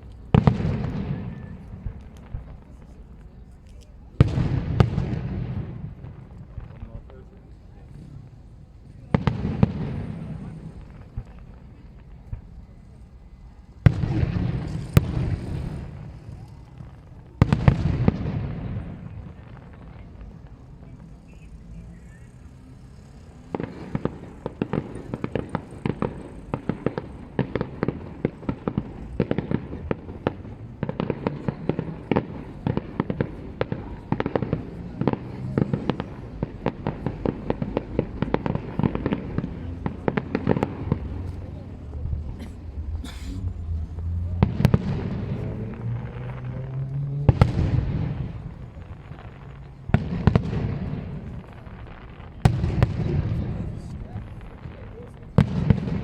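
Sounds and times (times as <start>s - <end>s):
crackle of sharp pops: 0.0s - 8.0s
rolling rumble: 0.0s - 56.0s.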